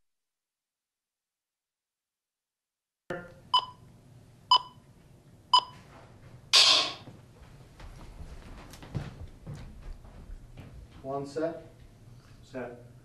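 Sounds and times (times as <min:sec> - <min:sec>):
short electronic beeps: 0:03.1 - 0:03.8, 0:04.5 - 0:04.8.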